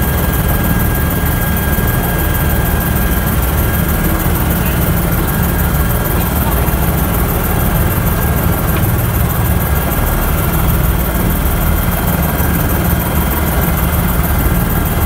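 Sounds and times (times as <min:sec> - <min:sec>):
helicopter engine and rotor drone: 0:00.0 - 0:15.0.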